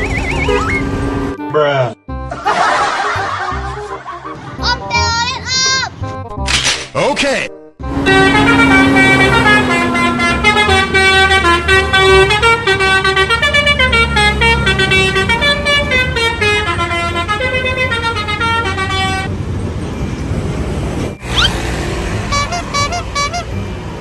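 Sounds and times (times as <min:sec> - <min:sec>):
engine and traffic rumble: 0:00.0 - 0:06.5, 0:07.7 - 0:24.0
multi-tone bus horn tune: 0:00.3 - 0:01.3, 0:07.8 - 0:19.3, 0:21.2 - 0:23.8.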